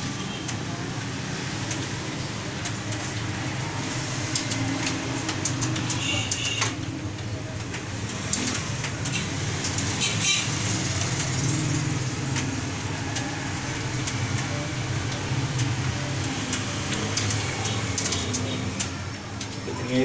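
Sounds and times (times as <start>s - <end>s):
sharp clicks: 11.0s - 19.6s.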